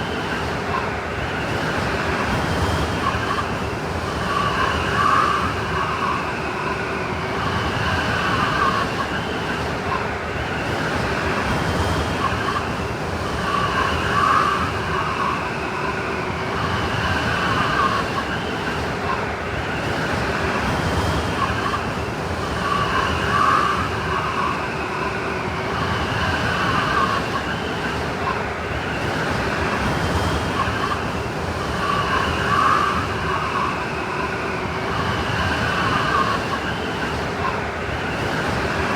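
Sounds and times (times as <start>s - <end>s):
howling blowing wind: 20.2s - 38.9s.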